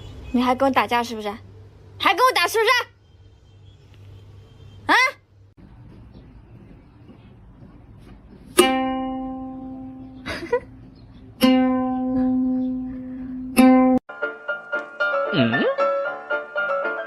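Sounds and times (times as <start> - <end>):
plucked string note: 8.6 - 10.2, 11.4 - 14.0
music: 11.4 - 17.0.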